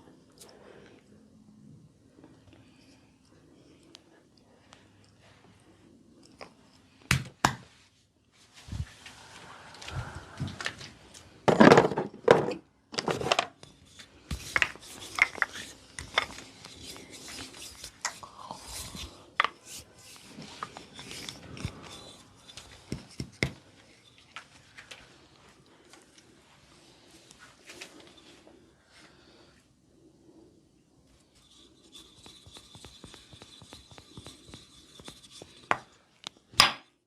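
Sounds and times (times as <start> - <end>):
hands rubbing and scratching: 13.6 - 25.3, 31.2 - 35.9.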